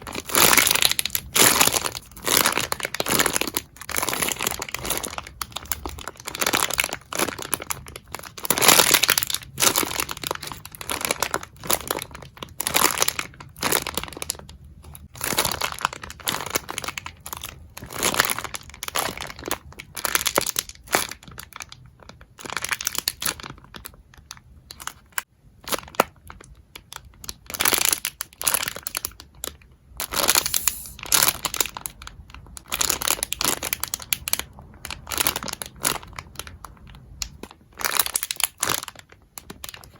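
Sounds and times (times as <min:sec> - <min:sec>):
packaging tearing: 0:00.0 - 0:14.4, 0:30.0 - 0:39.9
packaging crinkling: 0:00.0 - 0:25.1, 0:25.7 - 0:39.9.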